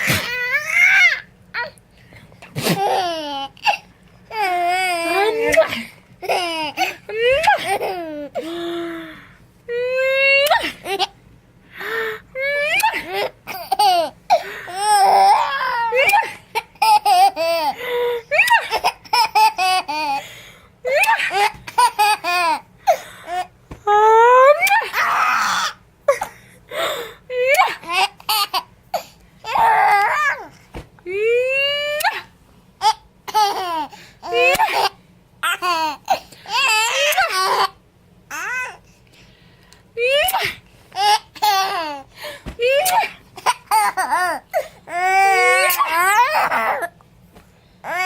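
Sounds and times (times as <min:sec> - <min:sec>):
baby laughing: 0:04.4 - 0:08.5, 0:12.7 - 0:20.2, 0:20.9 - 0:22.6, 0:27.5 - 0:28.7, 0:32.8 - 0:38.7, 0:40.3 - 0:42.1, 0:42.7 - 0:46.9
baby giggling: 0:32.8 - 0:37.7.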